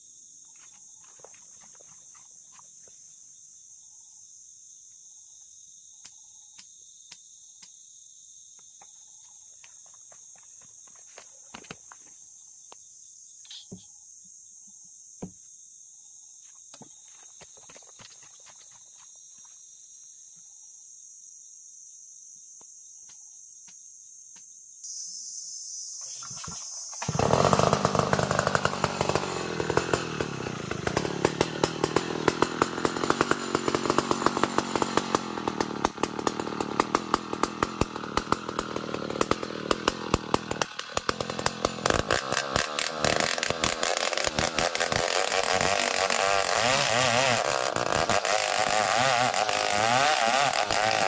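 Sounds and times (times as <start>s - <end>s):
insects chirring: 0.0s - 50.9s.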